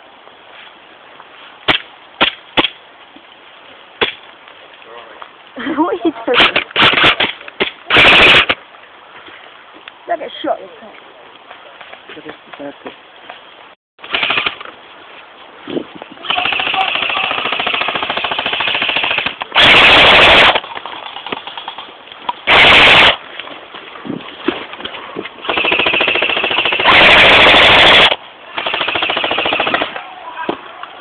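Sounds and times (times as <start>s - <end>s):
airsoft guns firing bursts: 6.4s - 7.3s, 7.9s - 8.6s, 14.0s - 14.6s, 16.3s - 21.8s, 22.5s - 23.2s, 25.4s - 30.0s.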